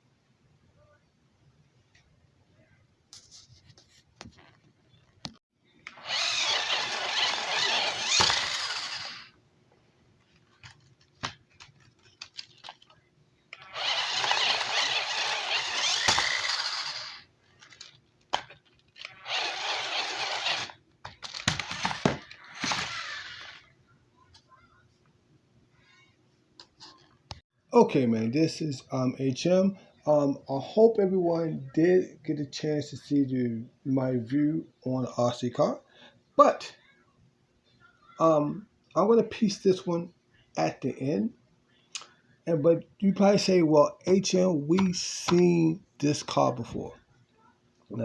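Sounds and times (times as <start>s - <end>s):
toy car motor rushing: 5.8s - 9.4s, 13.5s - 23.7s.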